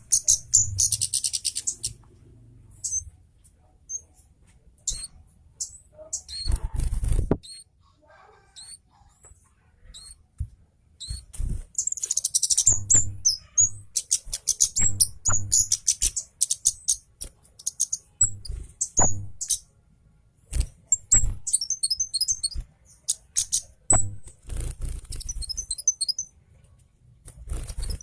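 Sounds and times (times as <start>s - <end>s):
bird chirping and trilling: 0.0s - 2.0s, 2.8s - 3.1s, 4.9s - 6.8s, 7.4s - 7.7s, 8.5s - 9.0s, 9.8s - 10.2s, 11.0s - 19.7s, 20.9s - 26.3s, 27.5s - 28.0s.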